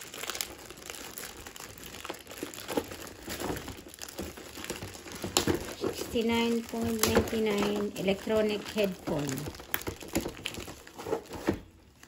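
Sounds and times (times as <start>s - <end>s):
packaging rustling and crinkling: 0.0s - 12.0s.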